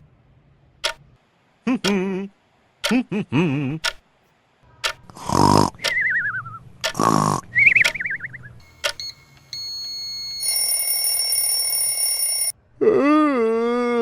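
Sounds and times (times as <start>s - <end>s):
steady beeps: 7.7s - 12.5s
electronic ringing tone: 8.6s - 12.6s.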